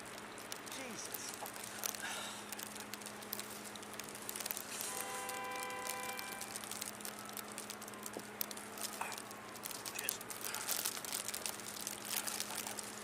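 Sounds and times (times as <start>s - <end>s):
steady pitched tone: 4.8s - 6.9s.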